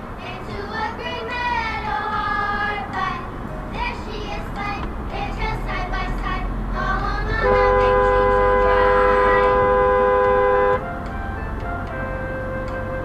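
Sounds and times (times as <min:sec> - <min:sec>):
music with singing: 0:00.0 - 0:13.0
two-tone vehicle horn blast: 0:07.4 - 0:11.3, 0:11.9 - 0:13.0.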